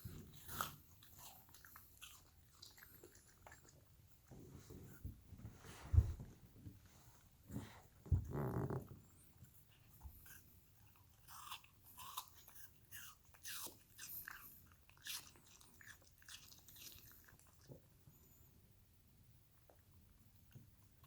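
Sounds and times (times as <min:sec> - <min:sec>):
dog crunching apple: 0:00.0 - 0:05.0, 0:09.8 - 0:17.8.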